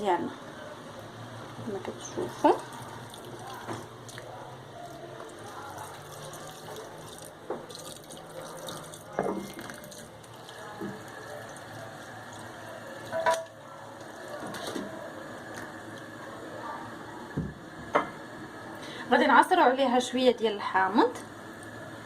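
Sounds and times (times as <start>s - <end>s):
liquid pouring into a pan: 2.4s - 16.0s.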